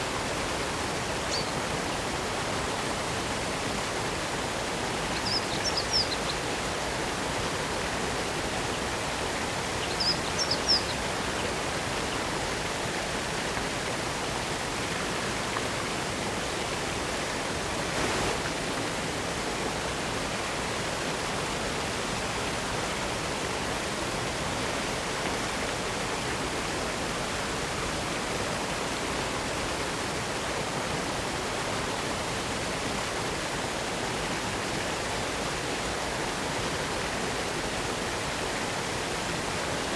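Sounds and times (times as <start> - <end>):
waterfall rushing: 16.1 - 22.4.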